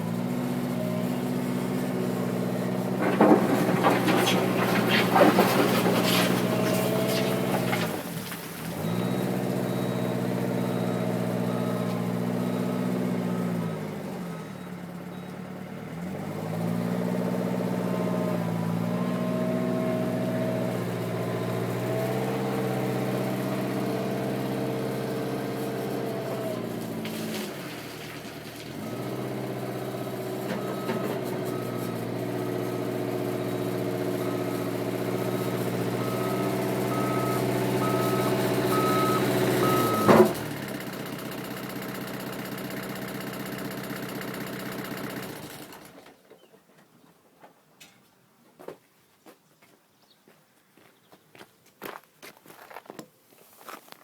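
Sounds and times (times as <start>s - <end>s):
diesel engine running: 0.0s - 46.0s
reversing alarm beeping: 36.0s - 40.3s.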